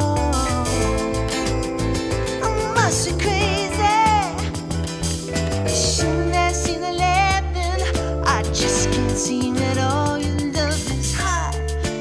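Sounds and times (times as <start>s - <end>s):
sustained bass notes: 0.0s - 12.0s
wavering melody with vibrato: 0.3s - 10.0s.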